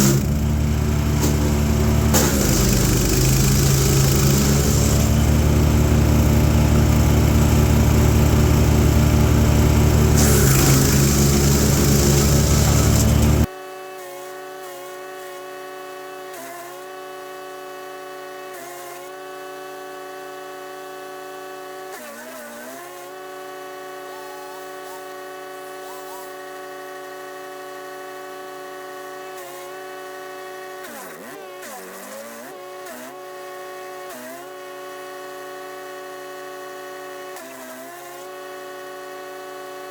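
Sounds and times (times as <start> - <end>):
wood chipper engine running: 0.0 - 13.5.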